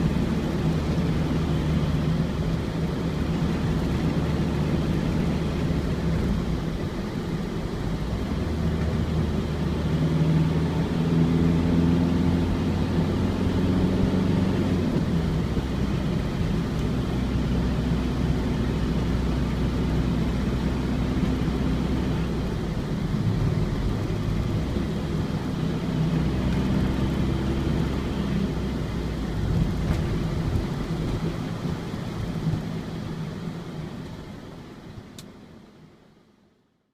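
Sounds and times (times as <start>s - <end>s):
tyre and road noise: 0.0s - 35.4s
diesel engine running: 0.0s - 35.9s.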